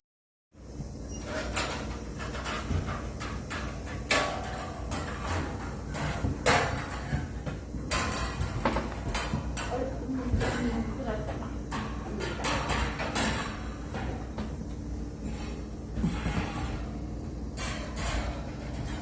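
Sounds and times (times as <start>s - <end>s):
steady low hum: 0.6s - 19.0s
irregular knocking and clattering: 1.3s - 14.8s.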